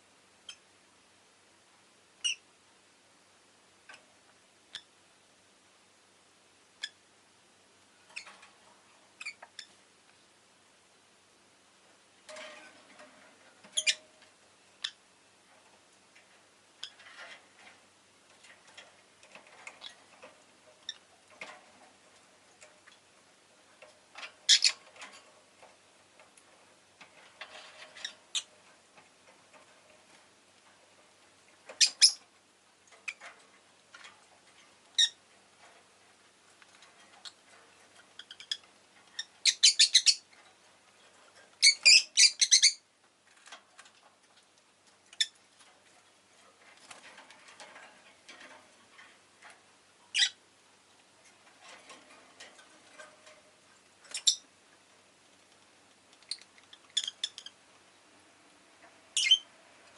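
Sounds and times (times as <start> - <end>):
lovebird chirping: 2.2 - 2.4, 9.2 - 9.7, 13.7 - 14.1, 24.5 - 24.8, 31.8 - 32.2, 39.2 - 40.3, 41.6 - 42.8, 50.1 - 50.4, 54.1 - 54.4, 56.3 - 57.6, 59.2 - 59.5.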